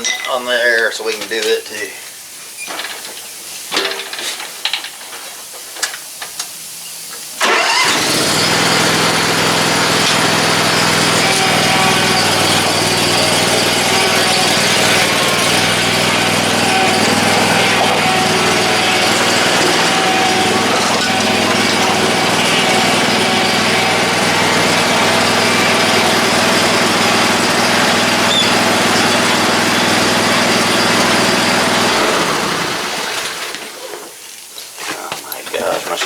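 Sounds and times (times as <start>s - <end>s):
motor humming: 7.4s - 33.5s.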